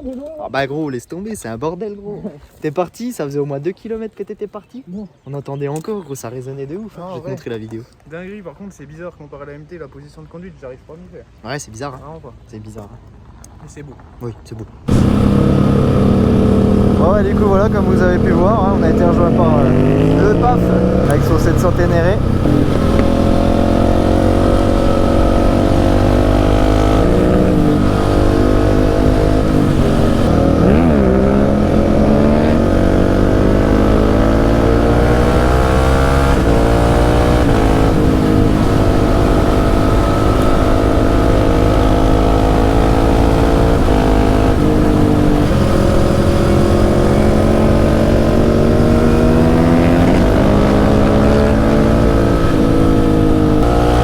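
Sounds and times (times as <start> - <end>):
motorcycle engine revving: 14.9 - 54.0.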